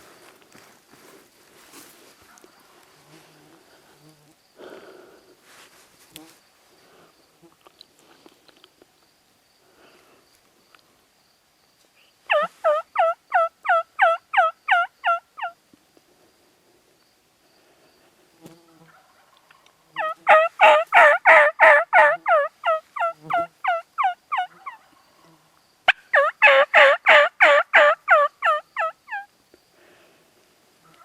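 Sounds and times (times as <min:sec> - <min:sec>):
turkey yelping: 0:12.3 - 0:15.6, 0:18.9 - 0:25.0, 0:25.9 - 0:29.3.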